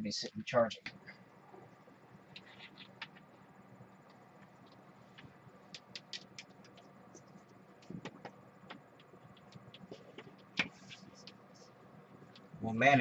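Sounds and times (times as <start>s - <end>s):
light clicks and taps: 4.0s - 11.4s.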